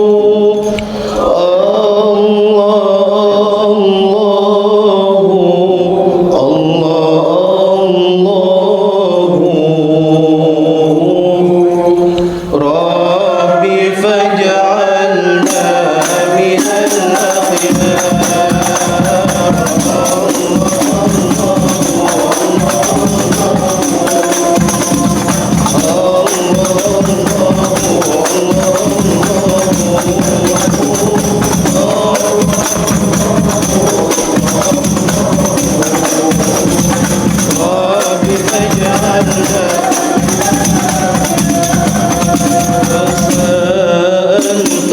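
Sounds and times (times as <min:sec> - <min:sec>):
voices chanting a melody: 0:00.0 - 0:44.9
frame drums fast rhythm: 0:15.4 - 0:44.9.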